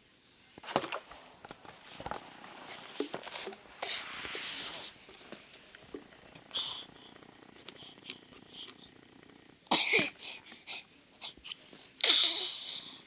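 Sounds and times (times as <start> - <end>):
rustles: 0.5 - 9.2
loud breathy hiss: 3.6 - 5.1.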